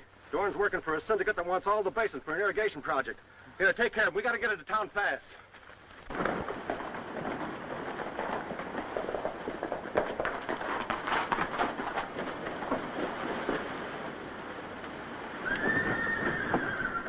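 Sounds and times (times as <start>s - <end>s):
horses galloping hoofbeats: 0.0s - 17.0s
high falling whistle-like tone: 15.4s - 17.0s.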